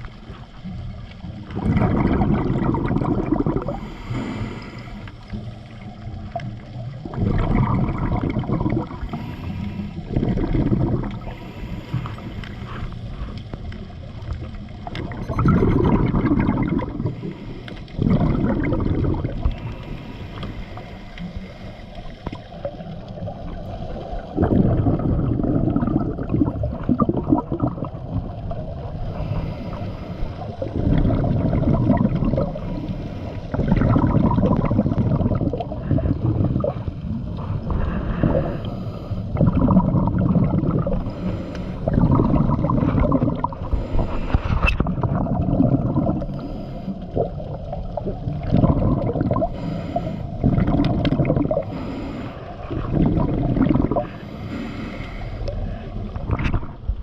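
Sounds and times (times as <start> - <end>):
exhaled bubbles burbling: 0.0 - 57.0
diver breathing through regulator: 3.1 - 6.0, 8.2 - 13.6, 15.6 - 22.6, 28.9 - 47.4, 48.6 - 56.3.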